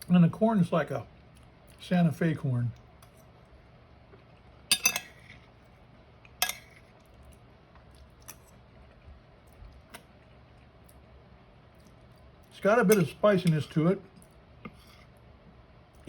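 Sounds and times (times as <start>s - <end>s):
cutlery clinking against a dish: 4.7s - 5.4s, 6.4s - 6.8s.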